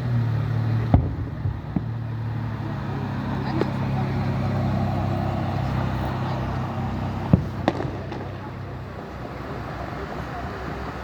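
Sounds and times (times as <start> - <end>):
idling vehicle engine hum: 0.0 - 11.0
sharp firework bangs: 0.8 - 2.4, 7.2 - 8.8.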